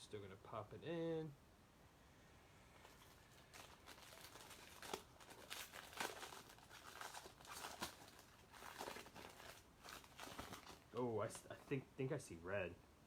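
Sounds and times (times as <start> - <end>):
cards and plastic sleeves rustling: 2.8 - 11.9.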